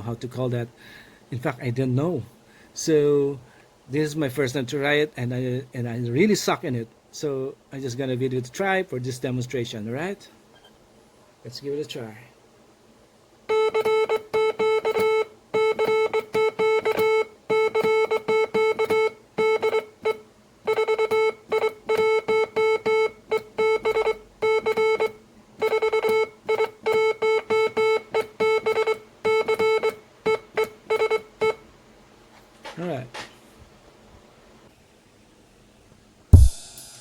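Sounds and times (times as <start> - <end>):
morse code beeps: 13.5 - 31.6.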